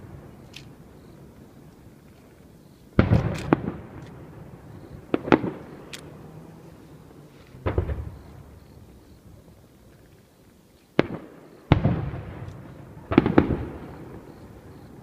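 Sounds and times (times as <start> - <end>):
fireworks bursting: 0.0 - 9.6, 10.9 - 15.0
rolling rumble: 0.0 - 10.6.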